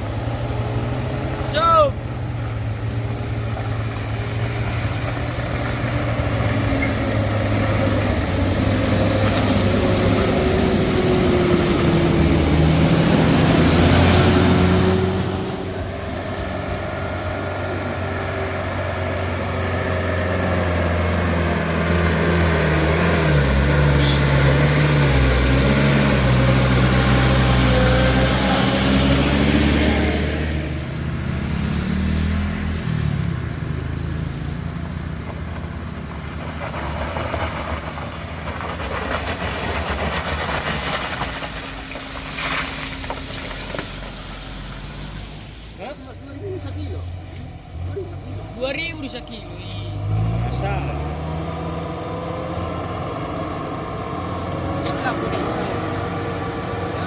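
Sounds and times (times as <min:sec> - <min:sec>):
heavy vehicle engines labouring: 0:00.0 - 0:57.0.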